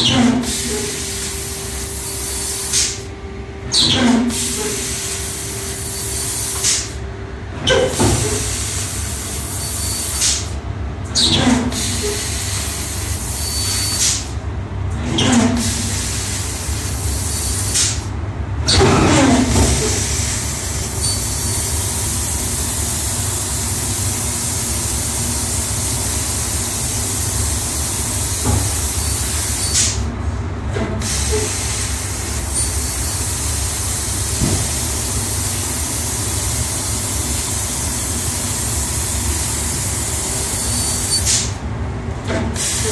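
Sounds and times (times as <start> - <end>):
laser cutter hissing: 0.0 - 3.1, 3.7 - 7.0, 11.2 - 14.4, 15.5 - 18.1, 19.4 - 30.1, 31.0 - 41.6.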